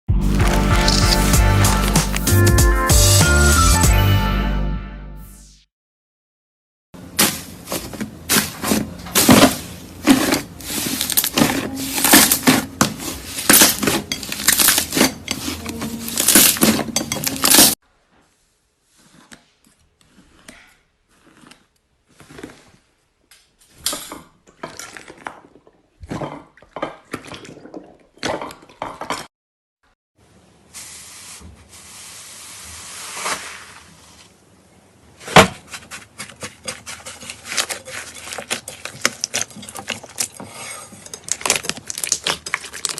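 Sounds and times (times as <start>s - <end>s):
utensils clinking against container: 7.8s - 17.8s
hiss: 30.7s - 33.8s.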